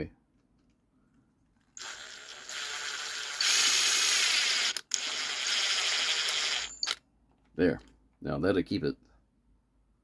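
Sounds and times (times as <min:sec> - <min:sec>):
power drill driving screw into wood: 0:01.8 - 0:07.0.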